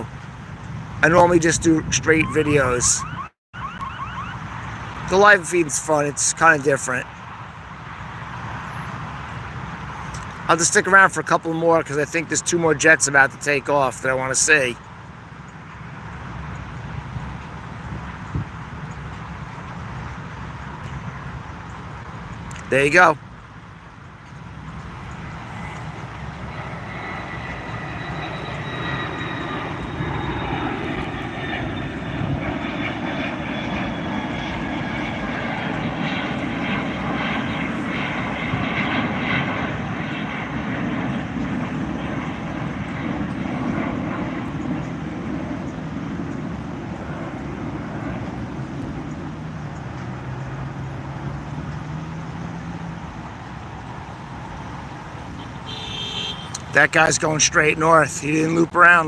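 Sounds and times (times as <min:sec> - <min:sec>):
jet aircraft taking off: 0:00.0 - 0:59.0
high whine falling in pitch: 0:01.0 - 0:05.6, 0:24.8 - 0:40.6.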